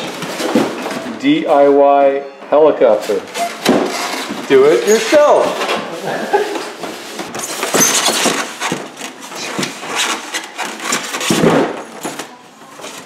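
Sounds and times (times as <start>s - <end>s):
packaging scraping and rubbing: 3.0s - 13.0s.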